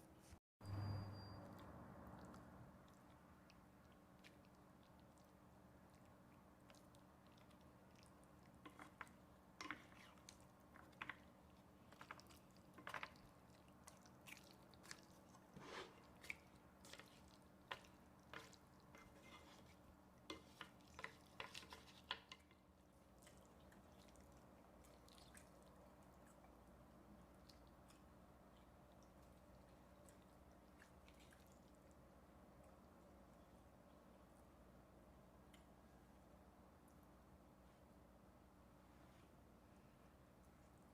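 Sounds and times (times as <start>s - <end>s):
person chewing noodles: 2.1s - 21.8s, 22.9s - 32.0s.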